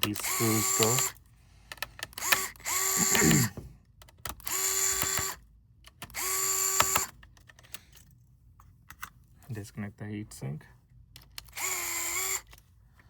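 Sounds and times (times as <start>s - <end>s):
electric screwdriver motor whine: 0.1s - 1.2s, 2.2s - 3.6s, 4.4s - 5.4s, 6.2s - 7.1s, 11.5s - 12.5s.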